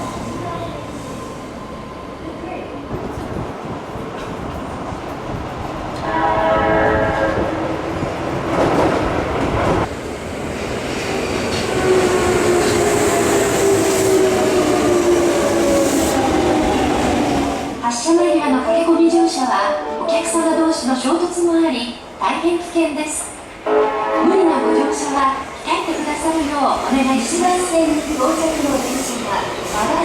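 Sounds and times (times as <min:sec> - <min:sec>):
train horn: 0:06.0 - 0:07.6, 0:18.6 - 0:20.4, 0:23.6 - 0:25.3.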